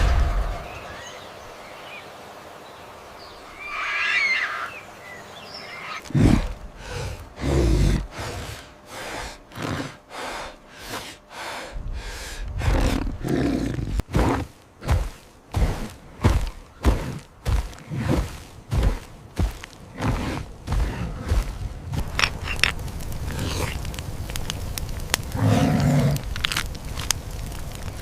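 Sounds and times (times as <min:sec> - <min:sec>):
low rumbling: 0:00.0 - 0:01.9
shrill wavering animal cry: 0:03.6 - 0:04.8.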